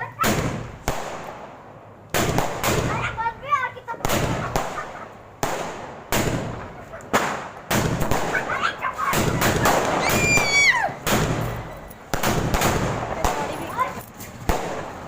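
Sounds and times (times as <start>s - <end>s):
firecrackers banging: 0.0s - 15.0s
falling whistle: 10.0s - 11.9s.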